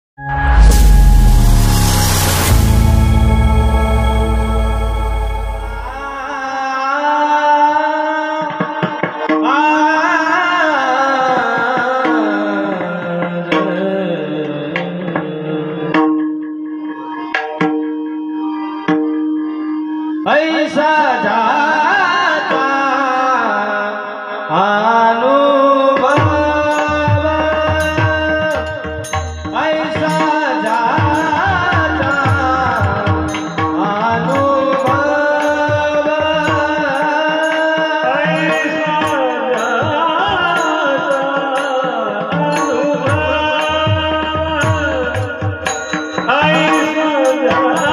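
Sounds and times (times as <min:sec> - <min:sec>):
harmonium-like drone: 0:00.2 - 0:07.6
person singing long ornamented note: 0:00.2 - 0:08.4
low hand-drum strokes: 0:00.3 - 0:06.2.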